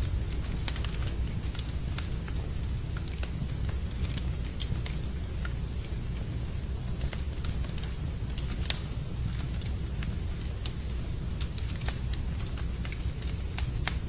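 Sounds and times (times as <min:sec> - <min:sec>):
fire crackling and popping: 0:00.0 - 0:14.0
fire rumbling: 0:00.0 - 0:14.0.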